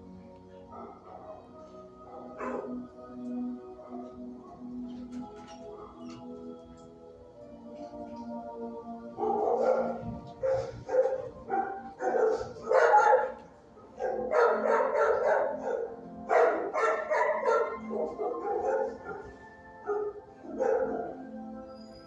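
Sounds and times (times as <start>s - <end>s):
dogs barking: 0.6s - 3.0s, 3.7s - 6.2s, 9.0s - 21.6s.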